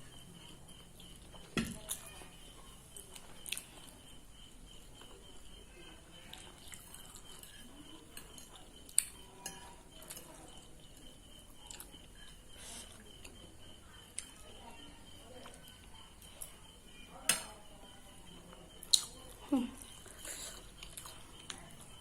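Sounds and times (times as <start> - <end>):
quiet chewing: 0.1 - 22.0
cutlery clinking against a plate: 7.0 - 10.5, 17.2 - 17.6.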